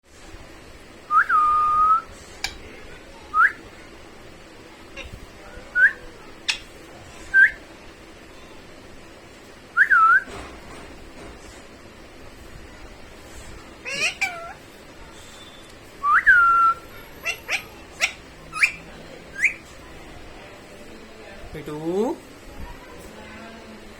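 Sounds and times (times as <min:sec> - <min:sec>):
parrot whistling: 0:13.8 - 0:14.6, 0:16.0 - 0:19.7.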